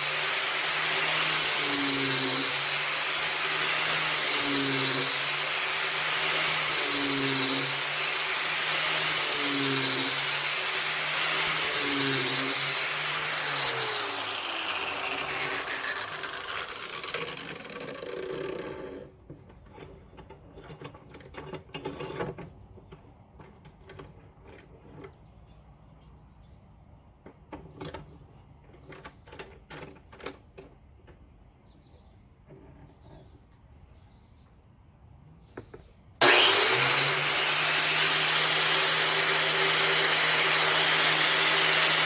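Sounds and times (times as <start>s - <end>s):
angle grinder grinding metal: 0.0s - 19.1s, 36.2s - 42.0s.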